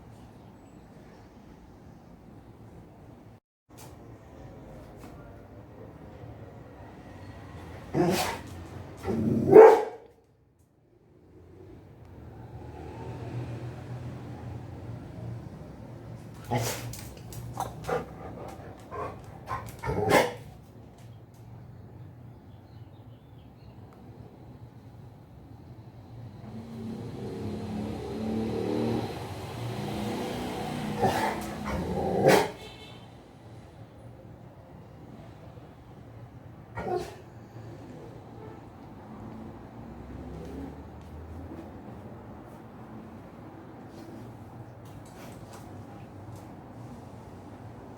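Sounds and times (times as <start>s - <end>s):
dog barking: 8.0s - 8.5s, 9.4s - 10.1s, 18.9s - 20.4s, 31.0s - 32.6s, 36.8s - 37.2s
vehicle engine droning: 11.4s - 19.9s, 25.9s - 32.3s.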